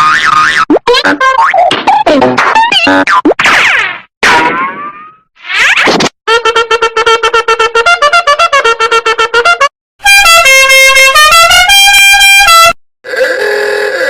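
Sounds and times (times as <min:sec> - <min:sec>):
horn-like stepped melody: 0:06.3 - 0:12.8.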